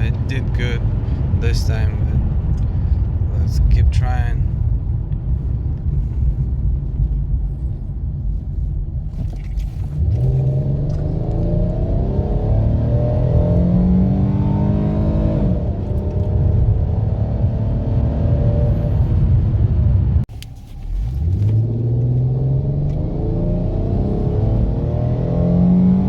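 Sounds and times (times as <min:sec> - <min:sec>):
car engine accelerating hard: 0:00.0 - 0:26.0
road rumble: 0:00.0 - 0:26.0.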